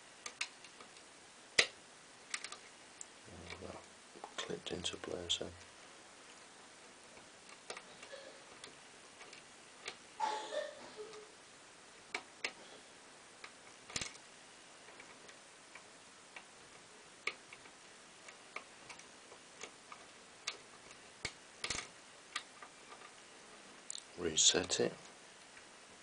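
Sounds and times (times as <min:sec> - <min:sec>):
lock pick clicking in lock: 0:13.4 - 0:14.2, 0:21.2 - 0:22.5.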